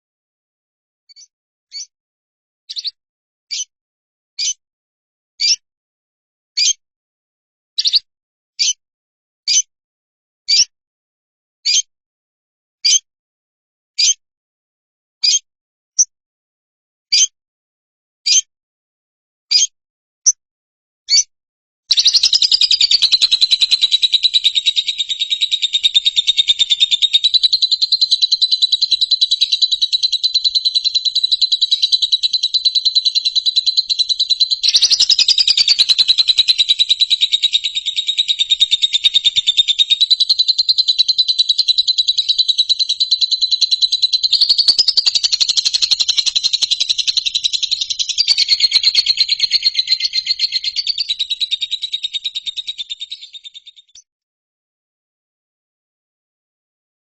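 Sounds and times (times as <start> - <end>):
high-pitched bird trill: 2.7 - 3.7, 21.9 - 54.0.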